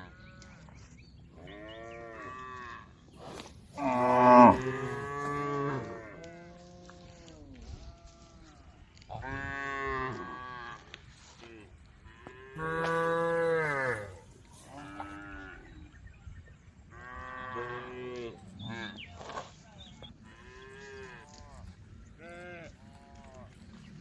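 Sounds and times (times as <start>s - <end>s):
cattle mooing: 3.8s - 6.2s, 12.6s - 15.6s.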